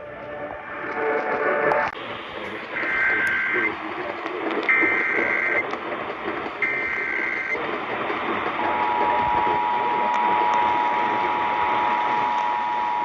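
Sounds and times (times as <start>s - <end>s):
radio static: 0.9s - 13.0s
digital data tones: 2.5s - 3.8s, 4.7s - 5.7s, 6.6s - 7.6s.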